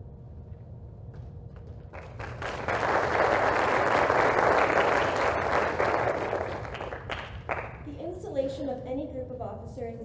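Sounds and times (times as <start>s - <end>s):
low room hum: 0.0s - 10.0s
audience applause: 1.9s - 7.9s.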